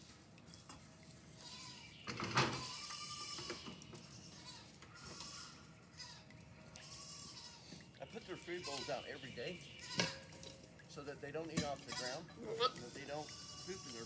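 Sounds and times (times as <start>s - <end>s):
goats bleating: 2.5s - 9.1s, 11.8s - 14.0s.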